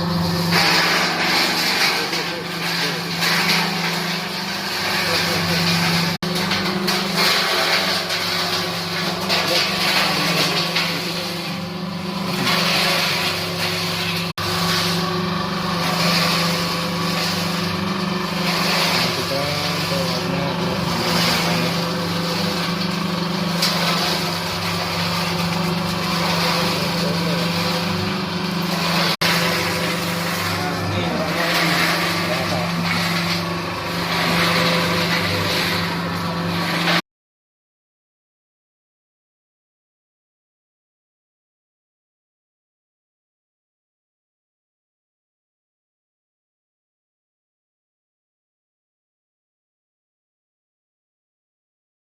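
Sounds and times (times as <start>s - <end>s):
machine hissing: 0.0s - 37.0s
mixing machine motor hum: 0.0s - 37.0s.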